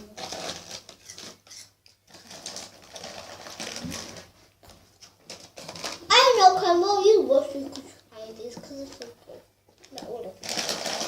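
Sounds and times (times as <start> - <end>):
snack wrappers rustling and crinkling: 0.0 - 4.4, 5.2 - 6.2, 9.8 - 11.0.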